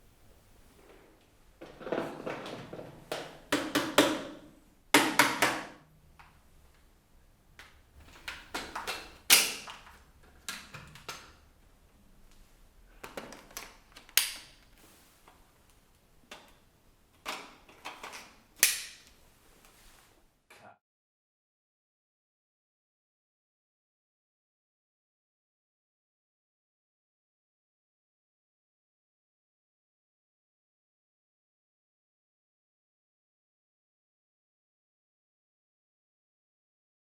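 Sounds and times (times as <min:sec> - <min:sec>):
plastic parts clicking: 0:13.0 - 0:14.6.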